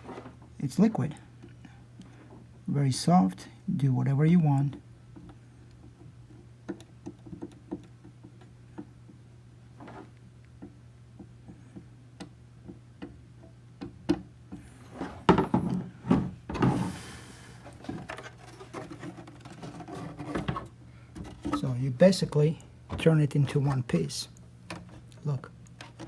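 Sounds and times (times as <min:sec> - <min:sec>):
knocks and scraping: 0:14.6 - 0:26.0.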